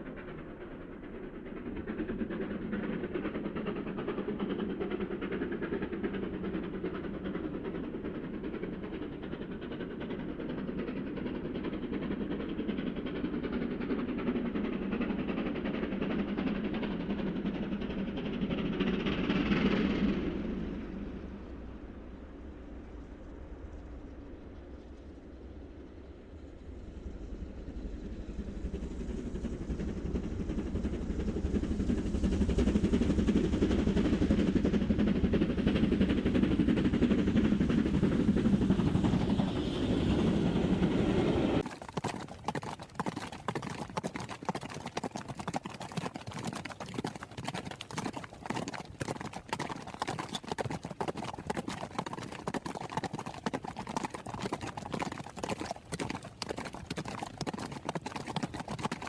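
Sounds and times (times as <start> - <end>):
galloping horses' hooves on road: 41.6 - 59.0.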